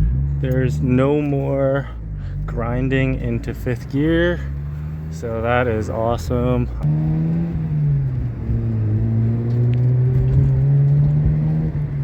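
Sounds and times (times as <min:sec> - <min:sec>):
rotary engine accelerating: 0:02.0 - 0:12.0.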